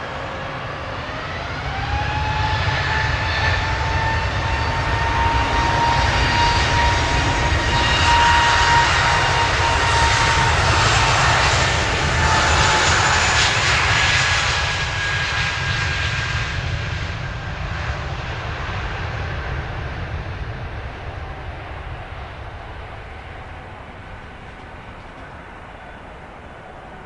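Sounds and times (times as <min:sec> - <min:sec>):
jet engine roar and whine: 0:00.0 - 0:27.0.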